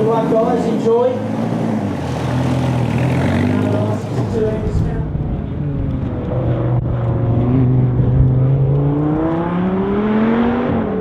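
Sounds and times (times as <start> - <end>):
car engine revving: 0.0 - 11.0.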